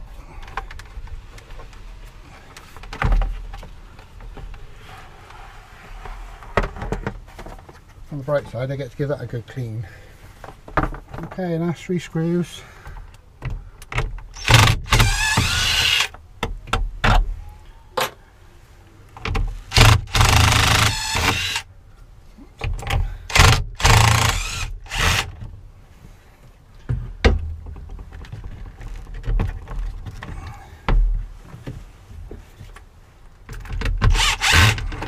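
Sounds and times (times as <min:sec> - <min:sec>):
cordless screwdriver bursts: 0:14.4 - 0:16.1, 0:19.7 - 0:21.6, 0:23.3 - 0:25.3, 0:34.1 - 0:35.0.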